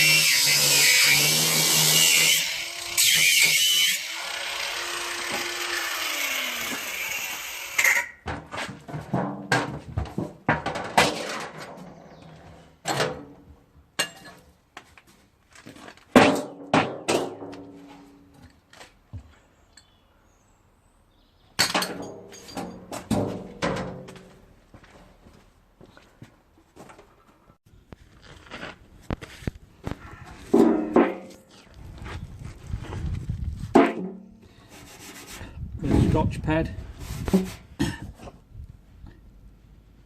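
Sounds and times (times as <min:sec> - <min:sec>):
power tool running: 0:00.0 - 0:08.1
metallic knocks and clanks: 0:08.2 - 0:12.0, 0:21.6 - 0:24.3.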